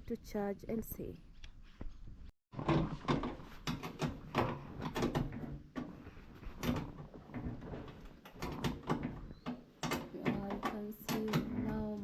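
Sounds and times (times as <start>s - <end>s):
equipment knocking and clattering: 2.5s - 12.0s.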